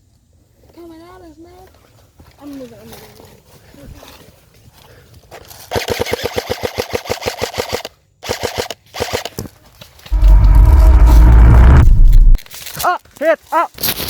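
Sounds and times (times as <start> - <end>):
airsoft gun firing full auto: 5.7 - 9.4
loud low rumble: 10.1 - 12.4.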